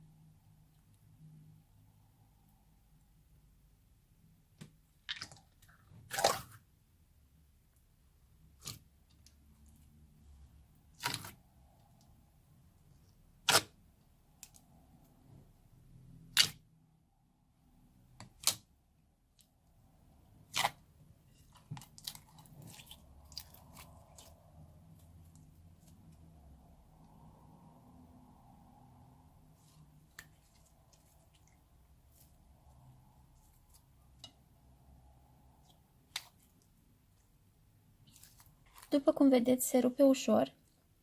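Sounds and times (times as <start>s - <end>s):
slime popping wetly: 13.4s - 13.8s, 16.3s - 16.6s, 18.2s - 18.7s, 20.4s - 20.8s
slime crackling: 13.4s - 14.7s, 20.3s - 26.7s, 35.5s - 36.8s, 38.0s - 39.2s.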